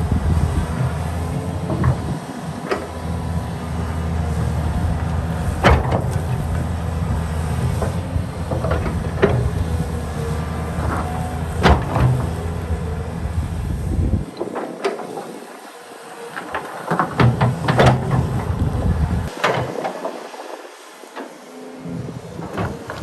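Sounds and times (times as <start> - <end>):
heavy machine engine running: 0.0 - 23.0.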